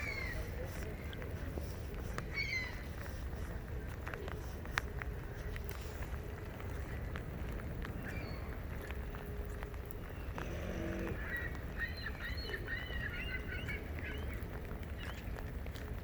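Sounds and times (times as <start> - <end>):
wind rumble on microphone: 0.0 - 16.0
seagulls calling: 2.3 - 3.0, 10.0 - 15.4.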